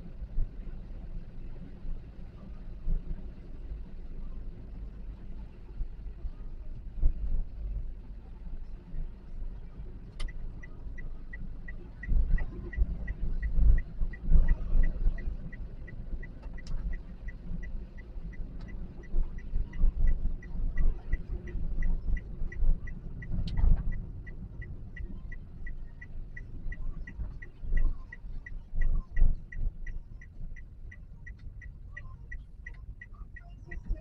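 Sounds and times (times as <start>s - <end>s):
engine and road rumble: 0.0s - 34.0s
turn-signal indicator ticking: 9.4s - 34.0s.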